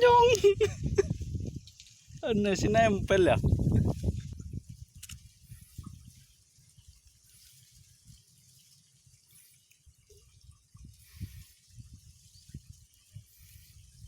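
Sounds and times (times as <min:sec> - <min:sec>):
low bumps and rumbles: 0:02.6 - 0:05.3.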